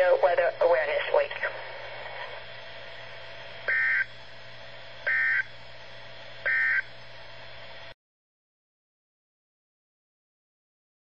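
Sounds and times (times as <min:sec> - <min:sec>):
two-tone digital squawks: 0:03.7 - 0:04.1, 0:05.1 - 0:05.5, 0:06.4 - 0:06.9.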